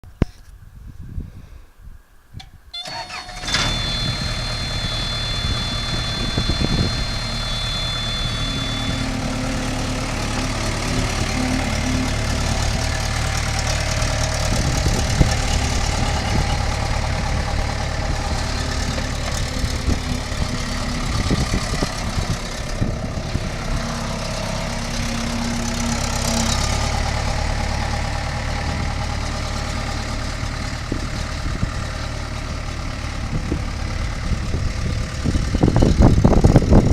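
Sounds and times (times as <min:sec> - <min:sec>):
high steady tone: 0:02.8 - 0:27.7
diesel engine starting and idling: 0:02.8 - 0:36.9.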